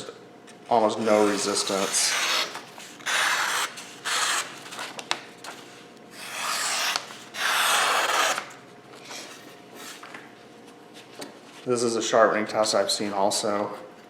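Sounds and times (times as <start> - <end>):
knife slicing through paper: 1.0 - 4.8, 6.2 - 8.4.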